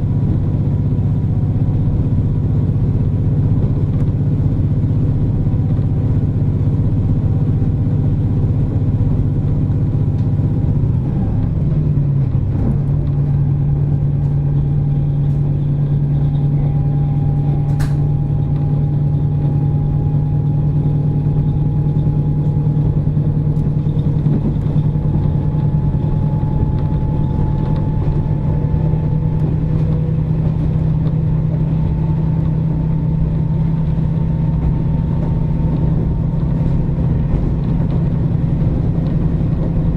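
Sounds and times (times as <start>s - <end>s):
low diesel drone: 0.0s - 39.9s
faint rising whine: 11.3s - 38.6s
sharp click: 17.7s - 18.1s.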